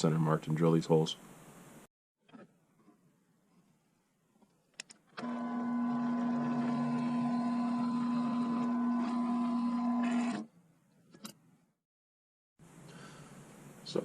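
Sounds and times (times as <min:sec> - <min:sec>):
electric drill boring into wood: 0:05.2 - 0:10.4.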